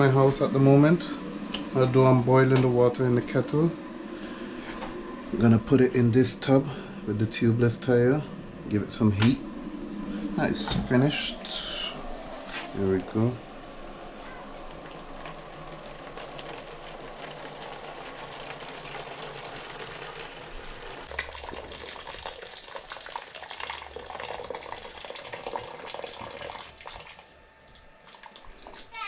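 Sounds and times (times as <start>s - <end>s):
water pouring into a tub: 14.6s - 29.0s.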